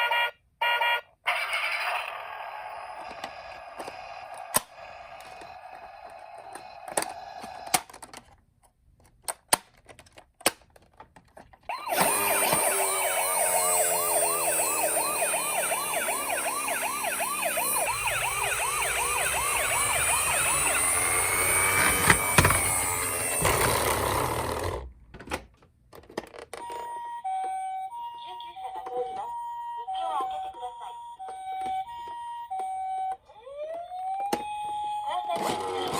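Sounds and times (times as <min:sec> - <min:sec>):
two-tone ambulance siren: 0:00.0 - 0:07.4, 0:11.7 - 0:23.8, 0:26.6 - 0:35.9
toy electronic siren wailing: 0:00.0 - 0:07.8, 0:11.7 - 0:24.2, 0:26.7 - 0:35.9.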